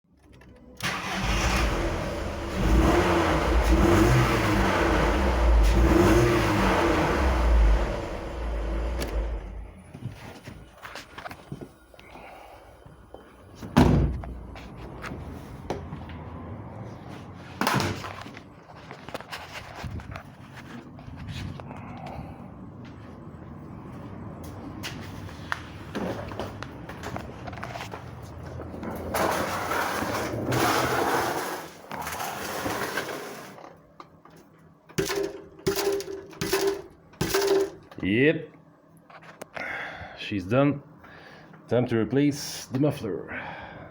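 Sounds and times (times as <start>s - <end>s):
car engine revving: 0.8s - 9.9s
sudden loud thuds: 13.8s - 14.2s.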